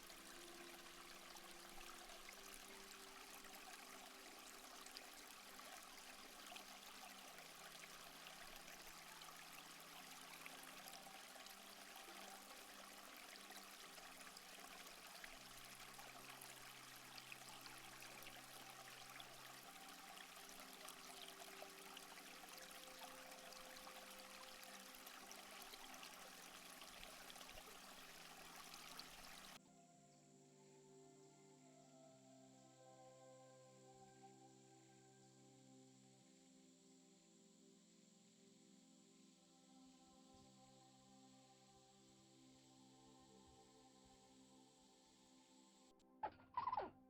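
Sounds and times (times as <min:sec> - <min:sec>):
flowing stream water: 0:00.0 - 0:29.6.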